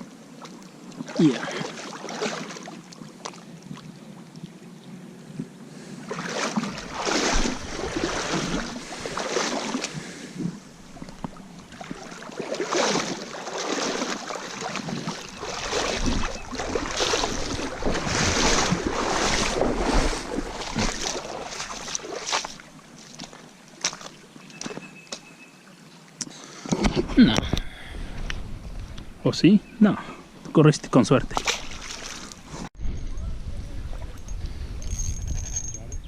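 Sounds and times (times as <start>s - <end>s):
wind buffeting microphone: 6.7s - 9.2s, 14.7s - 21.7s, 27.0s - 29.2s, 32.4s - 36.0s.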